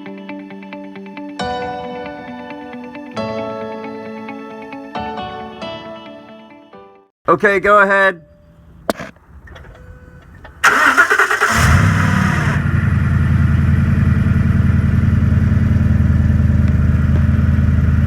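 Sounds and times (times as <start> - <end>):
engine idling: 10.3 - 18.0
starter motor cranking: 10.5 - 12.6.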